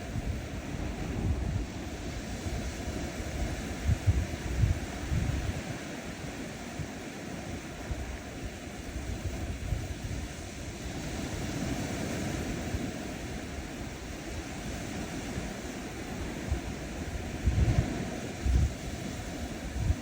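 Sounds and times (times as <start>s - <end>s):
ocean waves washing onto beach: 0.0s - 20.0s
wind rumble on microphone: 0.0s - 20.0s.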